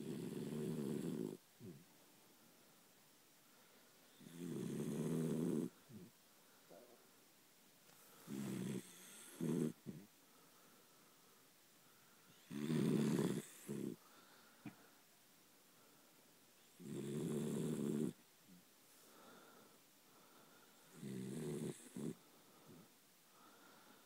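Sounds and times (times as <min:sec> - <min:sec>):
dog snoring: 0:00.0 - 0:01.8, 0:04.1 - 0:06.1, 0:08.2 - 0:10.1, 0:12.3 - 0:14.0, 0:16.8 - 0:18.2, 0:20.9 - 0:22.8.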